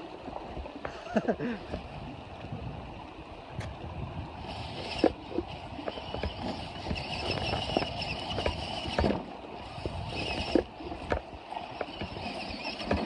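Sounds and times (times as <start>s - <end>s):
electric motor and gears whining: 3.6s - 13.0s.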